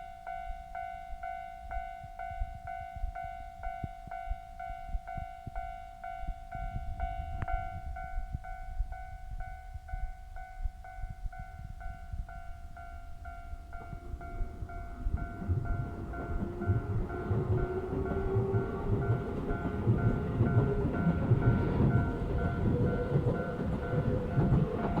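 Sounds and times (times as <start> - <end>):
level-crossing warning bell: 0.0 - 25.0
electric train rumble: 0.2 - 25.0
train motor whine: 13.8 - 25.0.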